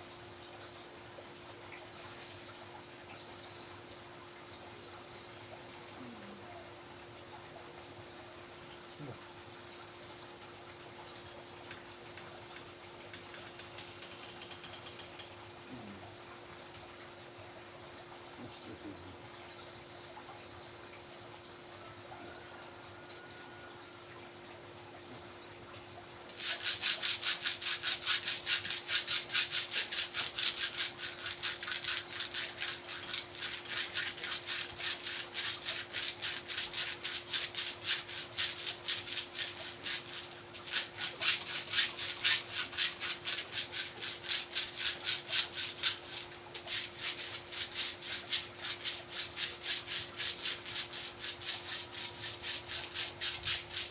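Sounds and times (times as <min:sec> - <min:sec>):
rubbing strokes on skin: 0:26.3 - 0:53.9.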